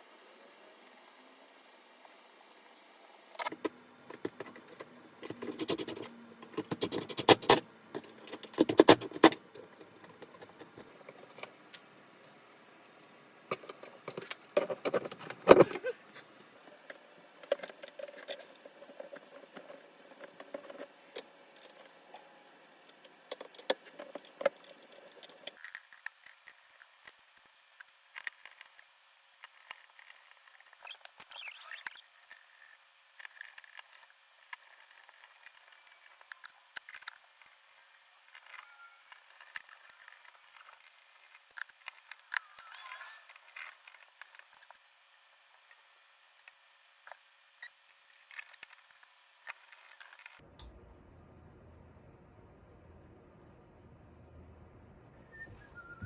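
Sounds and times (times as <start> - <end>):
small clicks: 27.8 - 37.6.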